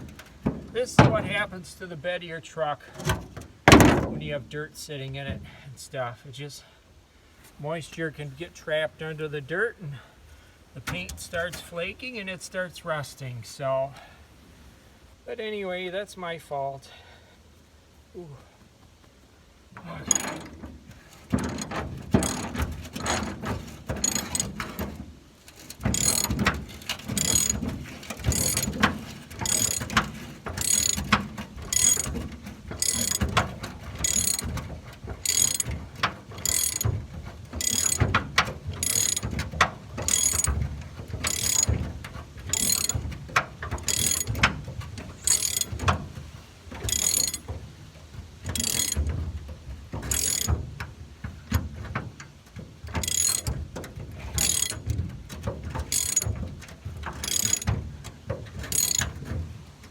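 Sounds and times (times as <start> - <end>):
hand ratchet clicking: 19.9 - 24.9, 25.5 - 34.6, 35.2 - 37.0, 37.6 - 46.0, 46.8 - 47.5, 48.4 - 49.2, 50.0 - 50.6, 53.0 - 57.7, 58.6 - 59.2.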